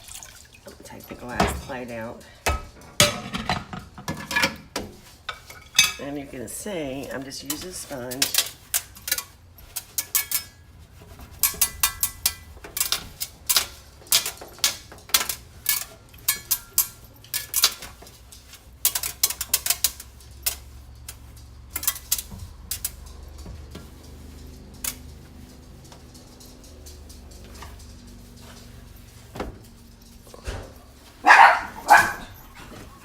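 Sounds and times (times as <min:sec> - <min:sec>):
hard objects clinking: 0:06.9 - 0:33.0.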